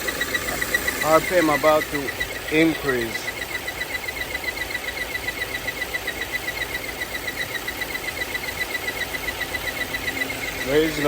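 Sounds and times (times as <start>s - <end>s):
car engine idling: 0.0s - 11.0s
rapid high-pitched chirping: 0.0s - 11.0s.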